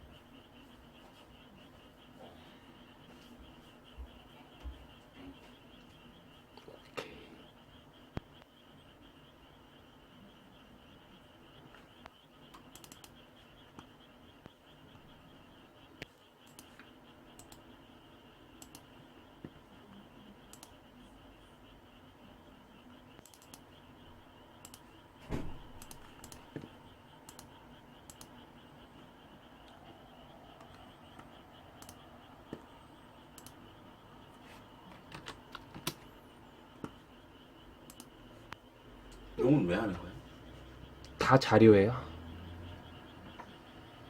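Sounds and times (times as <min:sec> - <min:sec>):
faint steady hum: 0:00.0 - 0:44.0
loud thump: 0:25.2 - 0:25.7
keyboard keys clicking: 0:33.3 - 0:33.6, 0:34.9 - 0:36.1.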